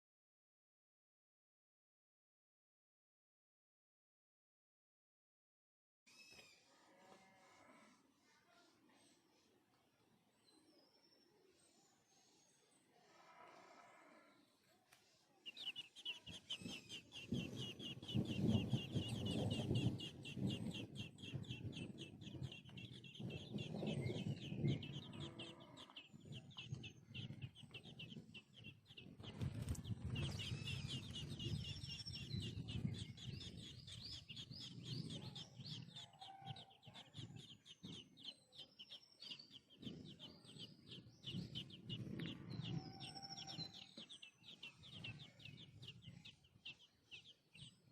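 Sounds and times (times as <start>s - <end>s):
bird chick chirping: 6.1s - 6.7s, 15.0s - 47.9s.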